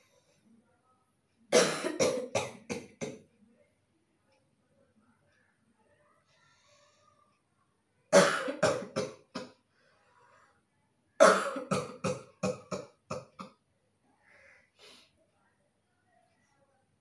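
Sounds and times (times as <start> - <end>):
person coughing: 11.2 - 13.4.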